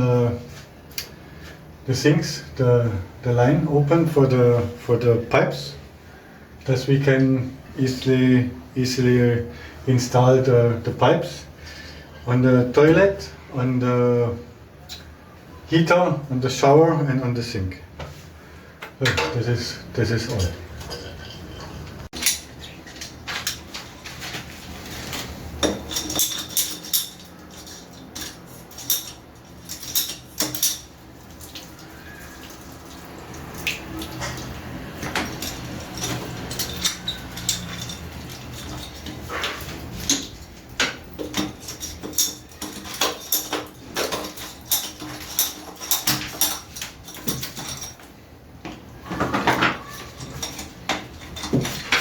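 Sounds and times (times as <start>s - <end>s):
metallic objects clinking and knocking: 20.4s - 31.7s, 33.4s - 48.2s, 49.0s - 52.0s.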